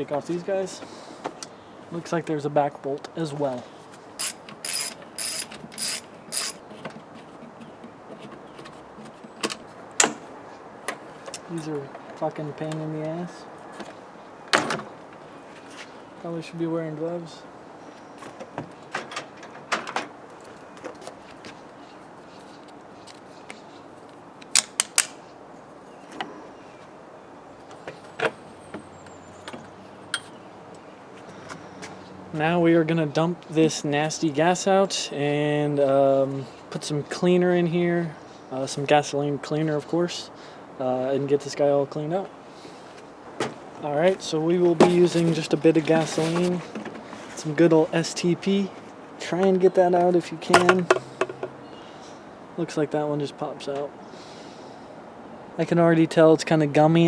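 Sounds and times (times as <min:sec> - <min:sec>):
socket ratchet wrench clicking: 0:04.2 - 0:06.6
hand tools clicking and knocking: 0:04.2 - 0:10.2, 0:50.5 - 0:51.6.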